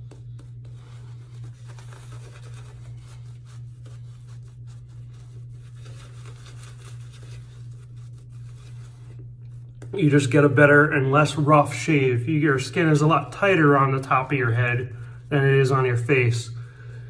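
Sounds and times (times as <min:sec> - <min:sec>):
shaving brush scrubbing lather: 0:00.0 - 0:16.6
steady low hum: 0:00.0 - 0:17.0.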